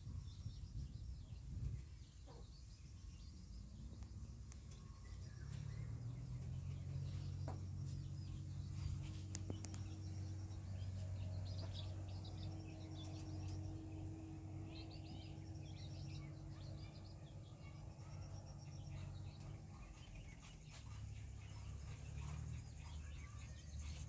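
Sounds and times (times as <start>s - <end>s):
small birds chirping: 0.0s - 24.0s
steady low hum: 0.0s - 24.0s
faint clicks: 9.0s - 10.0s.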